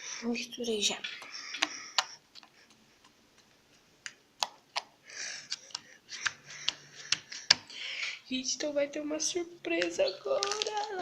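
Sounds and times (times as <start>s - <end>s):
slime squishing: 0.7s - 3.2s, 4.1s - 7.7s, 9.7s - 11.0s.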